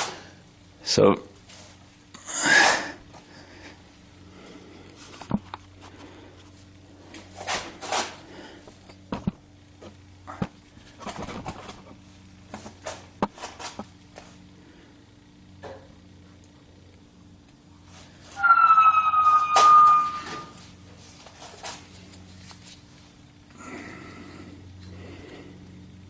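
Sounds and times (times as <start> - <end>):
low electrical hum: 0.0 - 26.0.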